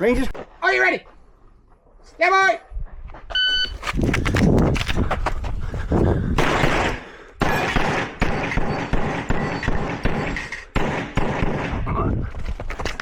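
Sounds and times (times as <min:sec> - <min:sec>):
rapid pistol fire: 0:06.4 - 0:11.8.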